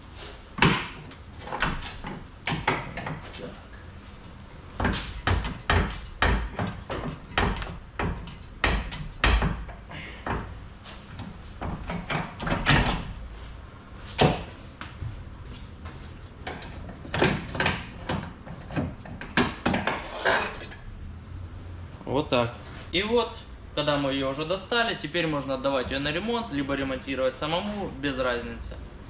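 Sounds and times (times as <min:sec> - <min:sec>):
metal parts clunking and knocking: 0:00.6 - 0:03.4, 0:04.7 - 0:13.2, 0:16.4 - 0:20.8.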